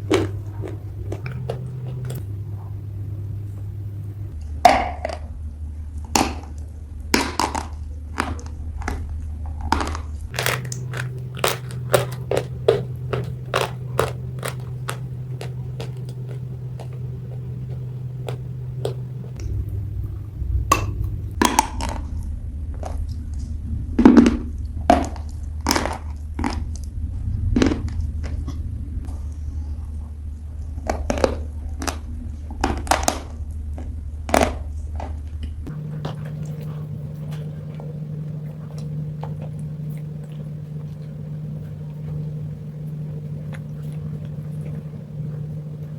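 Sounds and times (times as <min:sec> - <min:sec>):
clay crunching as chewed: 0:00.0 - 0:04.3, 0:09.7 - 0:21.4, 0:35.7 - 0:45.9
steady low hum: 0:00.0 - 0:04.6, 0:10.2 - 0:21.5, 0:35.6 - 0:45.9.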